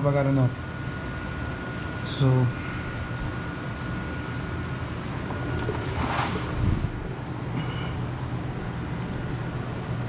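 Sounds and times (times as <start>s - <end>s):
oil pouring into a bucket: 5.6s - 6.5s.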